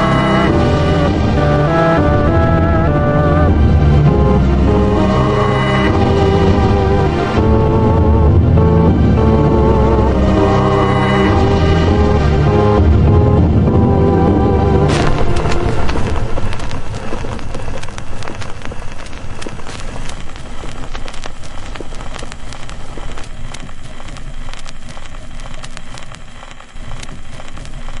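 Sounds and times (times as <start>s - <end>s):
low rumble: 0.0s - 26.2s
hissing haze: 0.0s - 28.0s
dense crackle of small clicks: 14.9s - 28.0s.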